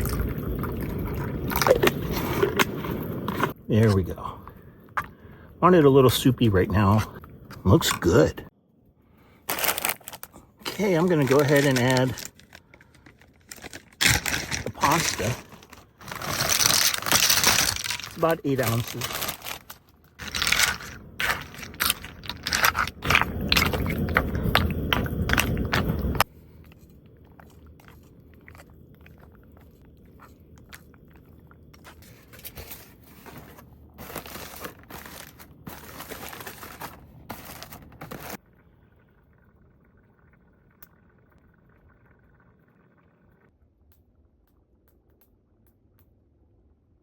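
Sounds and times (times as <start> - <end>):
dry pasta pouring into pot: 9.5 - 23.8.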